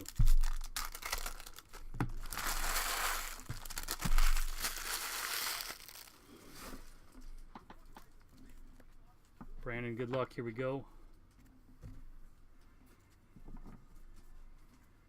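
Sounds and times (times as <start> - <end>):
foil wrappers crinkling and tearing: 0.0 - 6.5.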